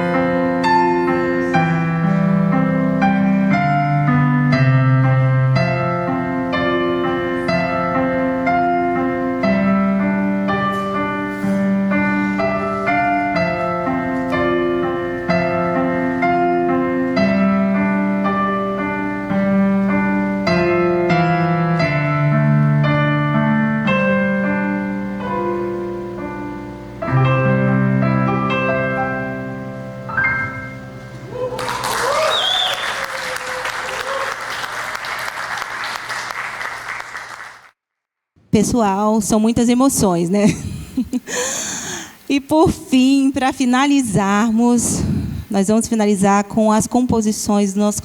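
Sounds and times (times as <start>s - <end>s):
piano chords and melody: 0.0s - 31.4s.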